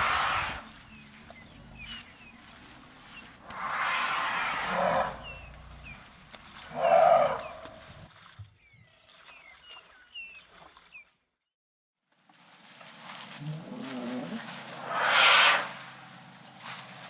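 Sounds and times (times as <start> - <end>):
elephant calling: 6.7 - 7.8, 13.3 - 16.5.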